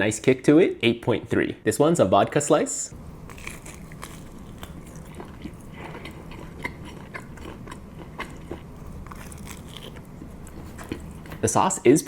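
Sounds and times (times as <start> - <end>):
low steady hum: 0.0 - 12.0
person chewing pizza: 3.2 - 11.5
mouth clicks and crunches: 3.3 - 11.4.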